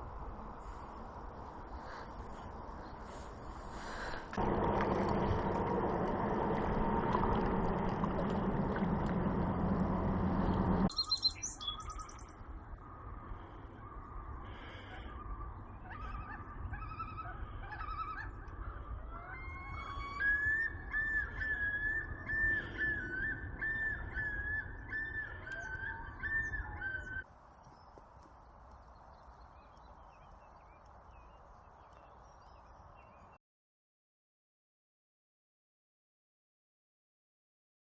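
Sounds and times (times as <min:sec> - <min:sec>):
wild birds calling: 0:01.7 - 0:28.0
bird whistling quick phrase: 0:10.9 - 0:12.2.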